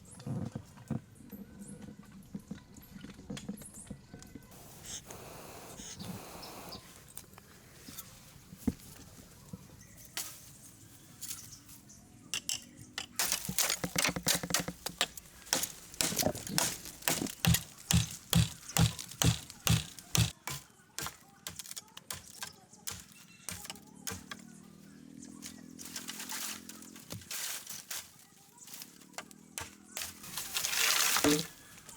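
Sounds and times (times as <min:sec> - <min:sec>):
hard objects knocking and clinking: 0:12.4 - 0:20.3.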